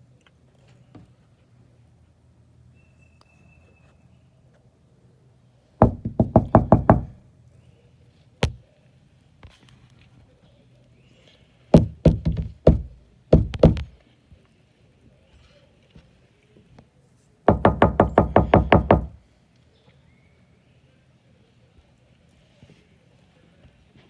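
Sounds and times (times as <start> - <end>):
fast knocking: 5.8 - 7.1, 11.8 - 13.9, 17.5 - 19.2.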